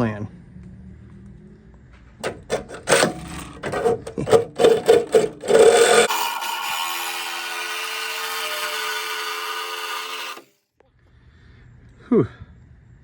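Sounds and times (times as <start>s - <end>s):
reciprocating saw cutting sheet metal: 2.2s - 10.5s.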